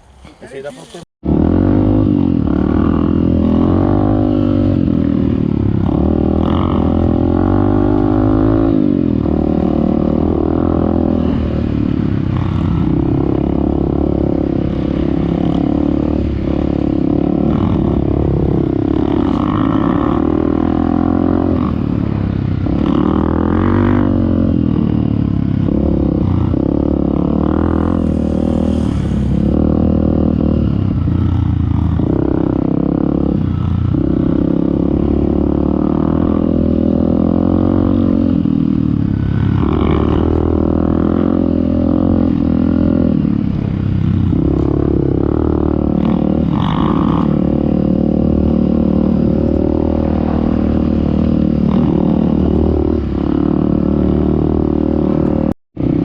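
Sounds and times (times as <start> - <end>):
motorcycle engine revving: 1.2 - 56.0
motorcycle rattling: 2.0 - 56.0.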